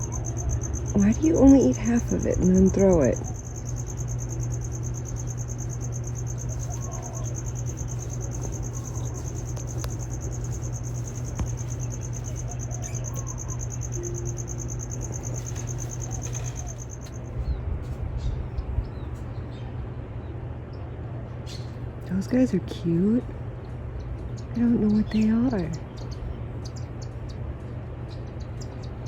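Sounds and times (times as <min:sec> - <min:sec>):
high pulsing insect trill: 0:00.0 - 0:17.5
steady low hum: 0:00.0 - 0:29.0.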